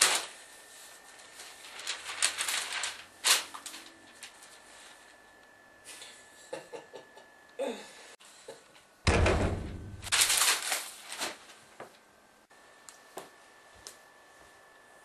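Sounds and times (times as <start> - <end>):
loud bang with deep rumble: 9.1 - 10.1
noisy crash: 9.1 - 10.4.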